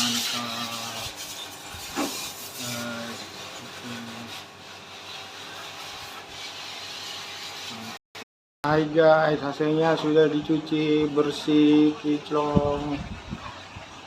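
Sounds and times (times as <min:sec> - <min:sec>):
water spray hissing: 0:00.0 - 0:08.0.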